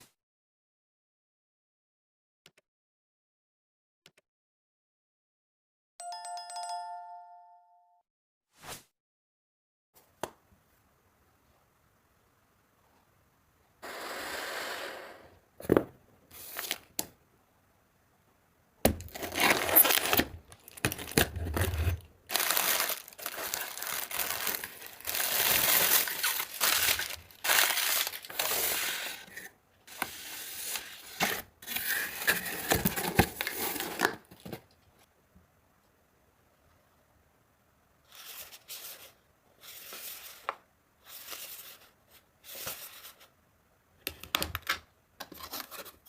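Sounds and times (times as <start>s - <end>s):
packaging crinkling and tearing: 19.0s - 28.8s.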